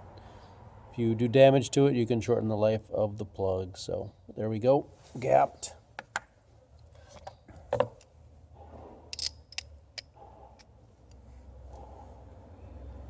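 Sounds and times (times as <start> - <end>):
metal hand tools clinking: 9.1 - 10.1.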